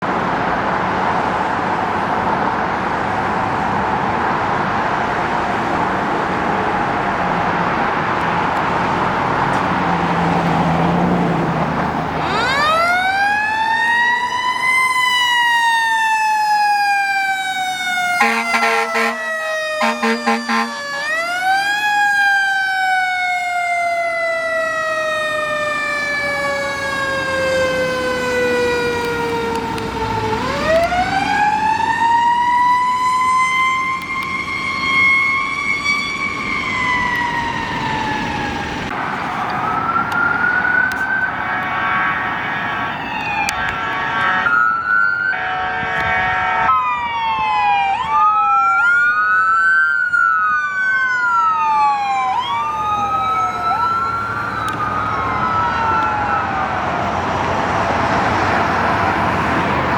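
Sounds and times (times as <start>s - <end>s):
fire engine siren wailing: 0.0s - 59.9s
air horn blasts: 18.1s - 21.0s, 43.5s - 44.6s, 45.3s - 46.8s.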